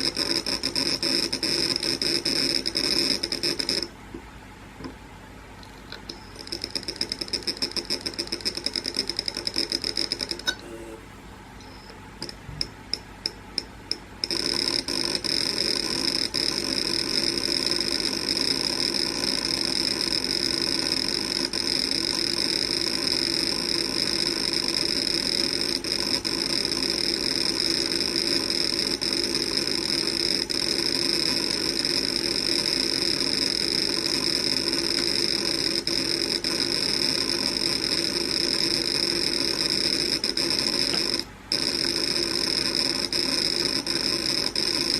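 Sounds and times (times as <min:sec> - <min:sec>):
hard drive buzzing ticks: 0:00.0 - 0:05.0, 0:05.6 - 0:11.0, 0:11.6 - 0:44.9
hard drive clicks: 0:11.6 - 0:44.9
high-pitched whine: 0:13.6 - 0:44.9.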